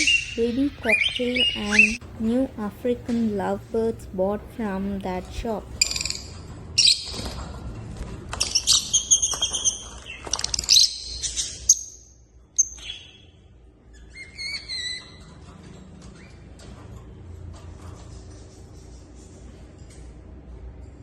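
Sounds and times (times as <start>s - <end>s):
birds chirping: 0.0s - 7.3s.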